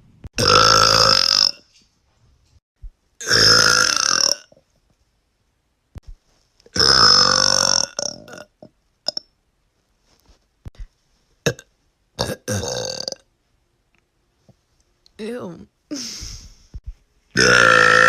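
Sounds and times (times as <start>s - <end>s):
woman burping: 12.2s - 13.2s, 17.4s - 18.0s.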